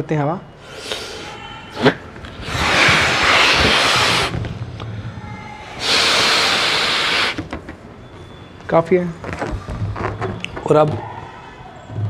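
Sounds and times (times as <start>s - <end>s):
air blown into balloon: 0.6s - 4.5s, 5.8s - 7.5s.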